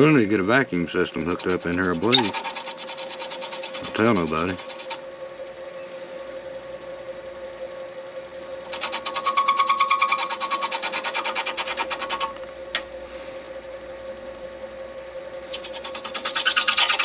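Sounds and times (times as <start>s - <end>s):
lathe humming: 0.0s - 13.0s
tool rattling on spinning workpiece: 1.0s - 5.0s, 8.7s - 12.4s, 15.5s - 17.0s.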